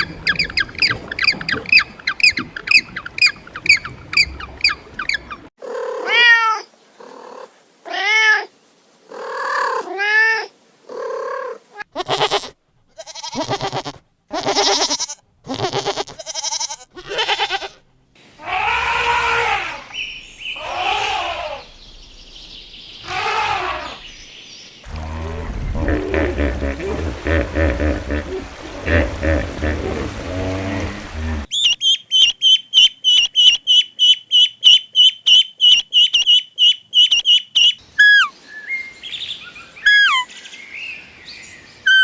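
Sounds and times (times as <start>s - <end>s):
cat meowing: 6.0s - 6.7s.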